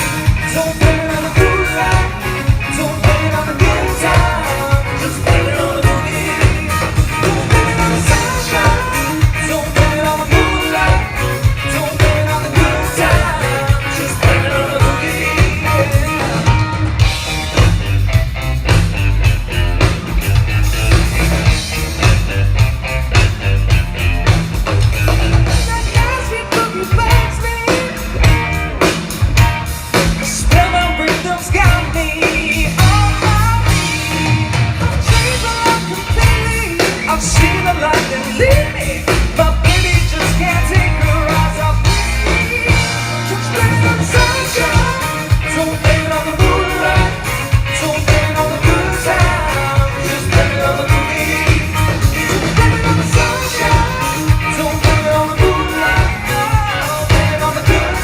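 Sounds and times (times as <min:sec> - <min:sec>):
bass guitar: 0:00.0 - 0:58.0
drum kit: 0:00.0 - 0:58.0
electric guitars: 0:00.0 - 0:58.0
live country band playing: 0:00.0 - 0:58.0
person singing: 0:00.2 - 0:16.6, 0:35.0 - 0:58.0.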